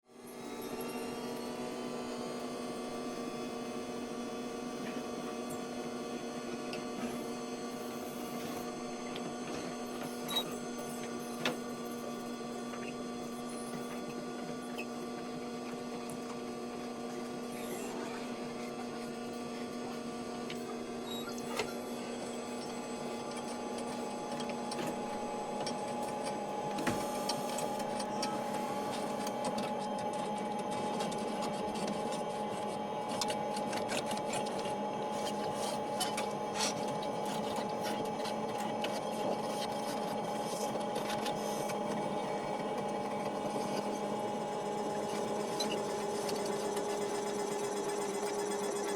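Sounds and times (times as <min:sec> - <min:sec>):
copy machine humming and clicking: 0:00.2 - 0:48.9.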